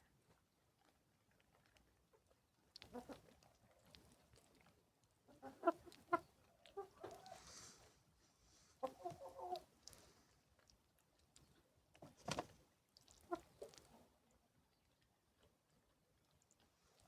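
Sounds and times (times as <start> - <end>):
hens clucking: 2.8 - 3.3, 5.3 - 7.6, 8.8 - 9.8, 13.2 - 13.7.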